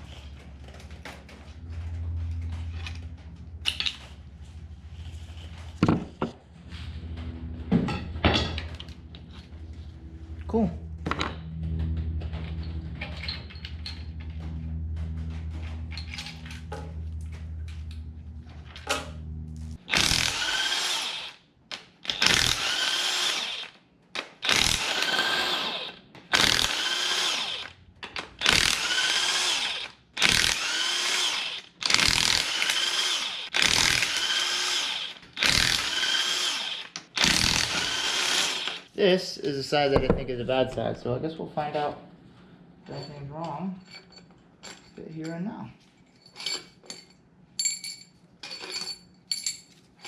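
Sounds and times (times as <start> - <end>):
steady low hum: 0.0 - 20.6
cordless power tool whining: 11.2 - 21.4, 22.0 - 23.8, 24.4 - 38.9.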